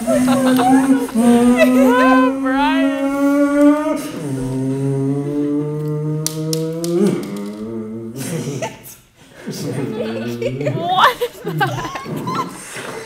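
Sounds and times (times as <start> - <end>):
person humming low drone: 0.0 - 8.6.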